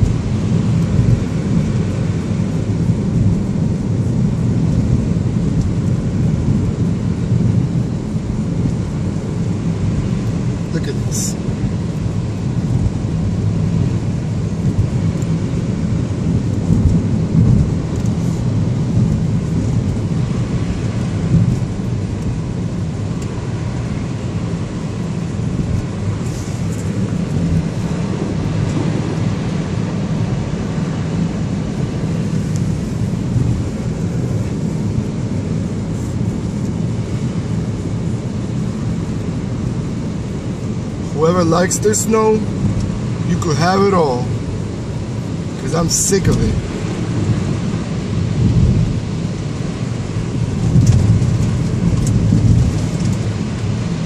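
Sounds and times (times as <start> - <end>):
car driving on snowy road: 0.0 - 54.0.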